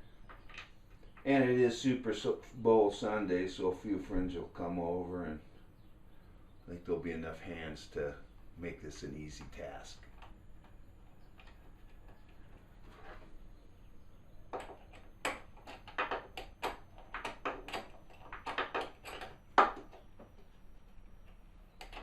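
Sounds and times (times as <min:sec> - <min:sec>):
knocks and clicks on wood: 0:14.5 - 0:20.5.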